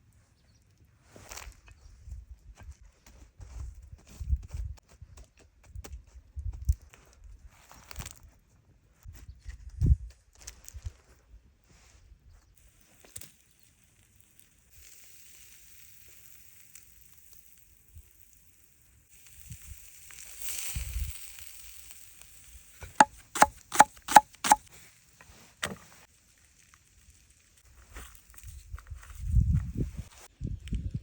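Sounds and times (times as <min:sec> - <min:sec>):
kebab sizzling: 0:12.6 - 0:24.6
sharp knocks: 0:23.0 - 0:24.6.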